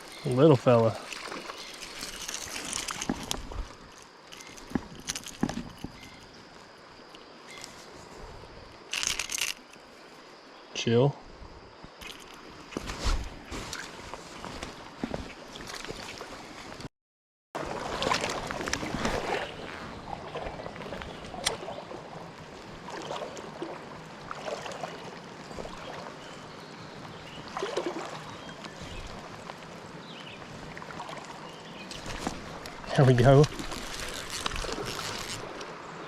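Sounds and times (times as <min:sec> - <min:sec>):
creek water splashing and gurgling: 0:00.0 - 0:05.5, 0:17.6 - 0:36.0.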